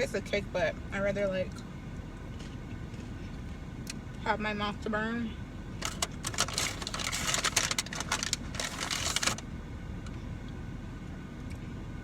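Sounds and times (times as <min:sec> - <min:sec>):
tortilla chips crunching: 0:05.8 - 0:09.4.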